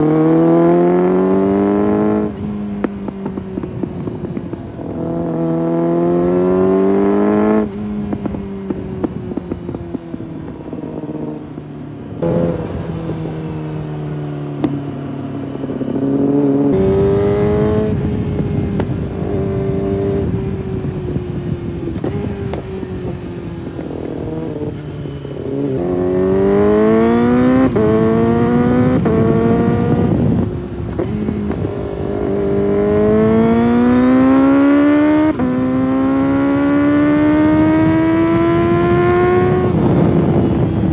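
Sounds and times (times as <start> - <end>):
motorcycle engine accelerating: 0.0 - 40.9.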